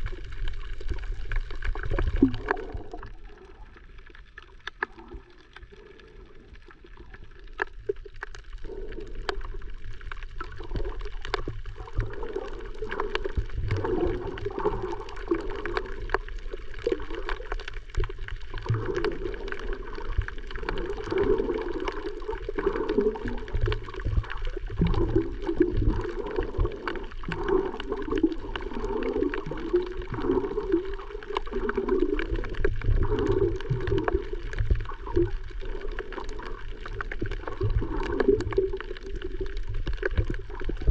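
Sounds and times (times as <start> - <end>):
muffled water gurgling: 0.0 - 40.9
small clicks: 3.8 - 5.7.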